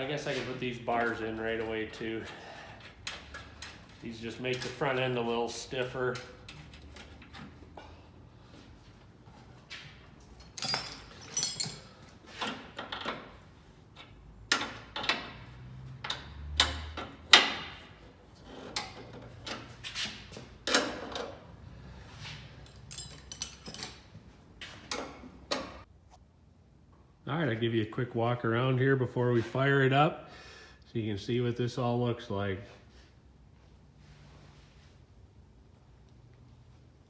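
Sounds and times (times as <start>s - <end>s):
metal bars and tools clanking: 10.2s - 12.6s, 22.2s - 25.8s.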